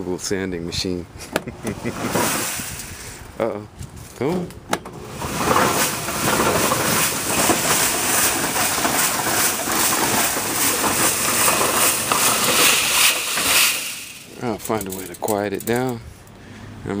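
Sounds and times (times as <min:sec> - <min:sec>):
gravel rattling in tumble sander: 0:01.8 - 0:03.1, 0:04.0 - 0:16.0.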